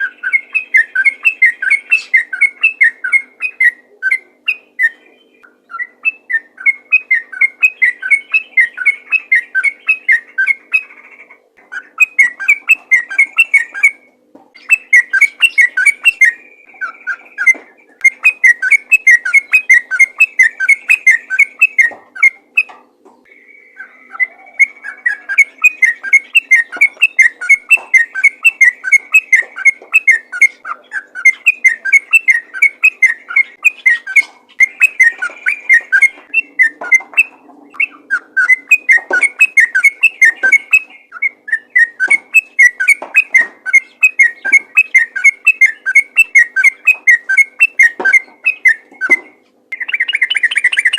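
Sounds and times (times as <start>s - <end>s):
bird singing liquid whistles: 12.0s - 22.7s, 31.2s - 50.9s.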